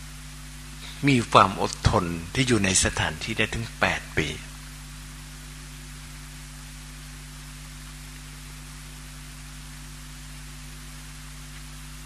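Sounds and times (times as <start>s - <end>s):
low electrical hum: 0.0s - 12.0s
steady hiss: 0.0s - 12.0s.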